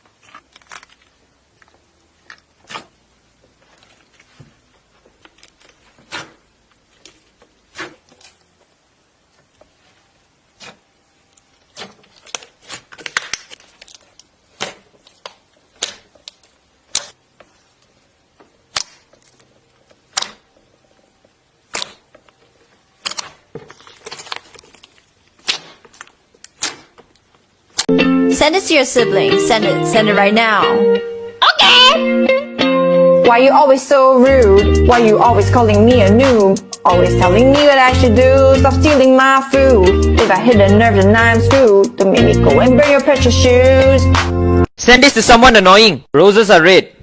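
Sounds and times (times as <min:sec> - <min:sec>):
slime clicking and crackling: 0:10.6 - 0:17.6, 0:18.6 - 0:20.7, 0:21.6 - 0:27.9.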